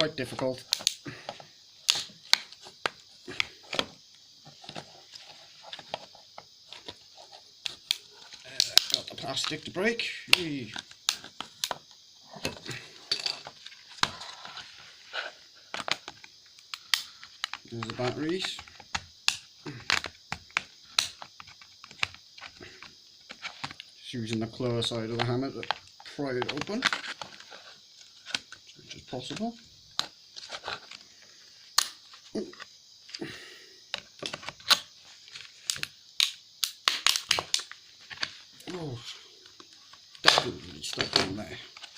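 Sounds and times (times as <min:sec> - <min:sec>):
plastic case cracking and snapping: 0:00.6 - 0:01.0, 0:07.7 - 0:09.5, 0:15.7 - 0:22.9, 0:31.8 - 0:32.0, 0:35.6 - 0:38.2, 0:40.2 - 0:41.9.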